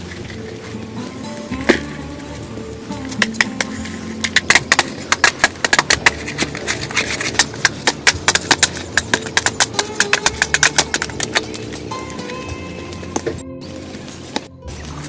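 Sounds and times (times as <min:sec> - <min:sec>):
rapid sharp taps: 0:03.2 - 0:11.5.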